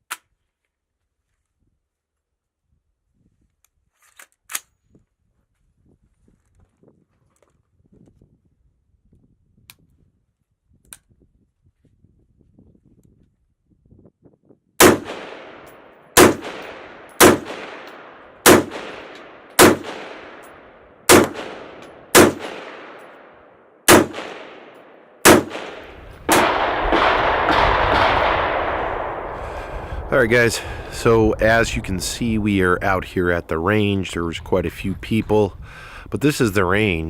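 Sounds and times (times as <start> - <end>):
rifle shots echoing: 14.8 - 29.7
steady rushing noise: 25.4 - 34.1.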